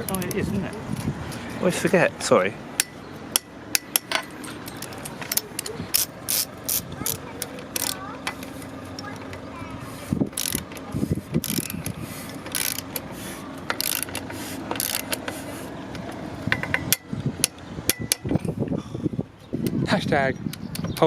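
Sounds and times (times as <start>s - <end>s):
ratchet wrench clicking: 2.8s - 9.2s, 10.3s - 13.1s, 13.7s - 15.4s, 16.5s - 18.5s.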